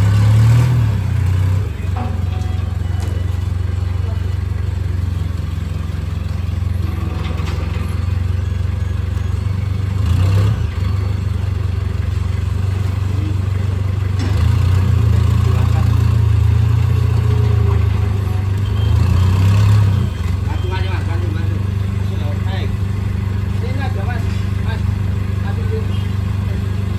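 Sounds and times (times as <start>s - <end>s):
vehicle engine running: 0.0s - 26.9s
light clatter and scraping: 6.8s - 8.3s.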